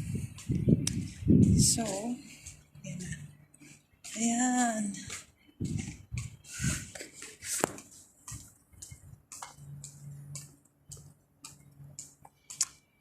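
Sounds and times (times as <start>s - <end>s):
low thumps: 5.6s - 6.8s.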